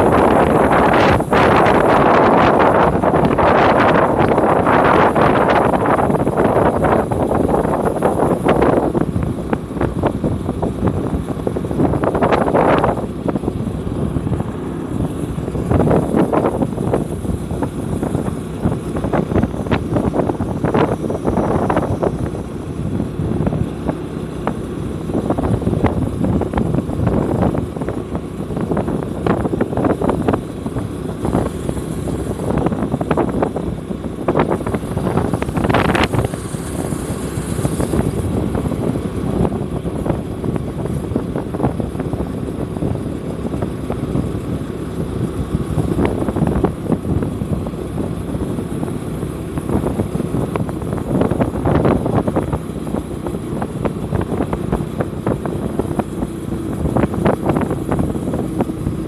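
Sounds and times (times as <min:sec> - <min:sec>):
vehicle engine and road noise: 0:00.0 - 0:59.0.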